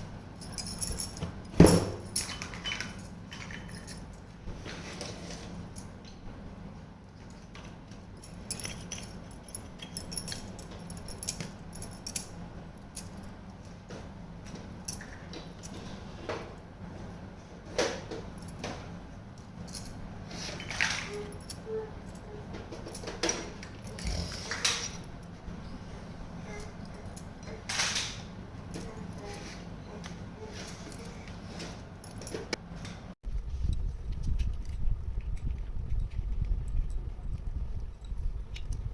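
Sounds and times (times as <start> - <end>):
steady low hum: 0.0 - 38.9.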